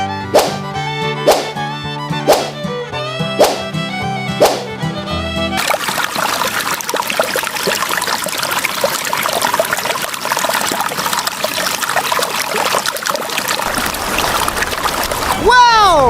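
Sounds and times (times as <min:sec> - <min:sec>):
water drips: 0:05.6 - 0:16.0
water trickling and splashing: 0:05.6 - 0:16.0.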